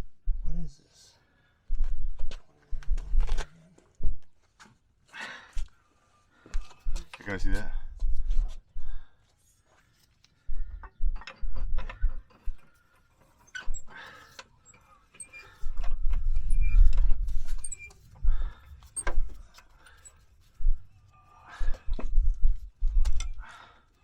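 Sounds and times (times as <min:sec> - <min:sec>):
low rumble: 0:15.9 - 0:23.4.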